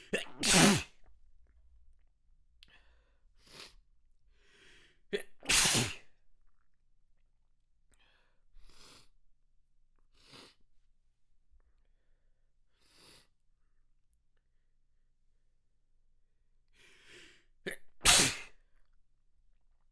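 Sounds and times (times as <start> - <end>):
person sneezing: 0.0 - 0.9, 5.2 - 6.0, 17.7 - 18.5
short breaths: 2.6 - 5.0, 16.8 - 17.5.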